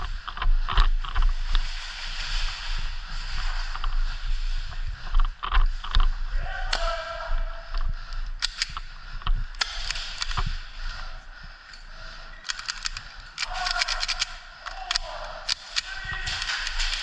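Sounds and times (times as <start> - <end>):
rustling movement: 0.0 - 17.0
sharp clicks and snaps: 7.8 - 10.6, 11.7 - 17.0.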